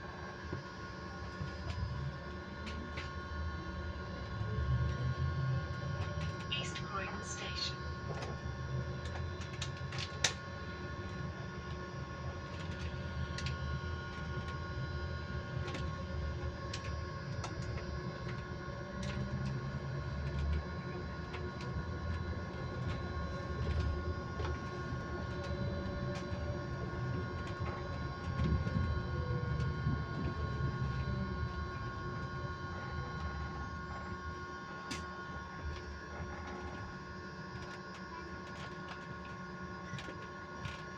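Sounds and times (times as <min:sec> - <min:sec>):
electric bus whine: 0:00.0 - 0:40.9.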